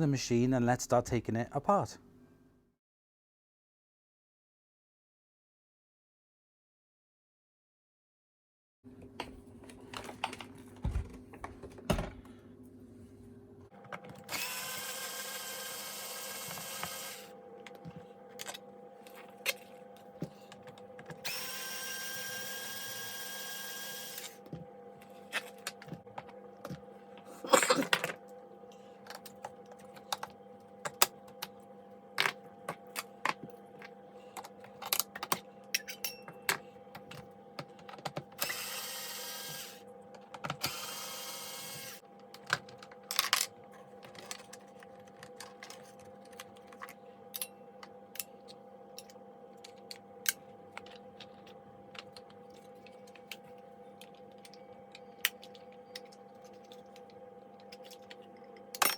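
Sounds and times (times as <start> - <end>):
power screwdriver whirring: 14.3 - 17.3, 21.2 - 24.4, 38.4 - 39.8, 40.6 - 42.0.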